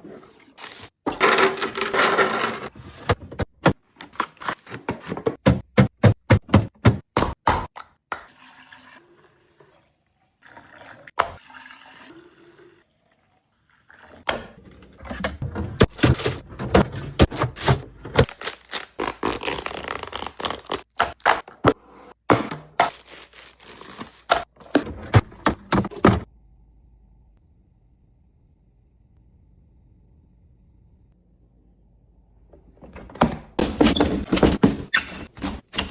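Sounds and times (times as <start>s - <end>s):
containers and bottles clattering: 0.6s - 3.4s, 14.4s - 18.4s.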